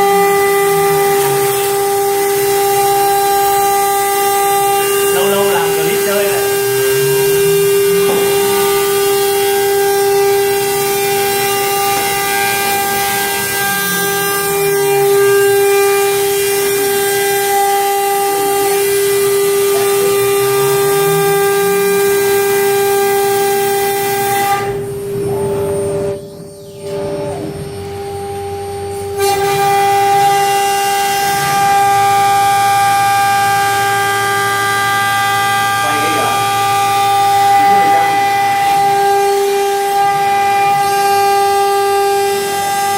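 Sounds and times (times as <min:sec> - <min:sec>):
router spindle whine: 0:00.0 - 0:42.9.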